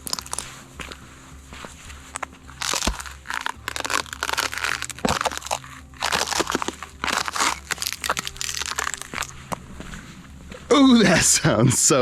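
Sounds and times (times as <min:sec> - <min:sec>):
boots crunching on frozen dirt: 0:00.0 - 0:11.2.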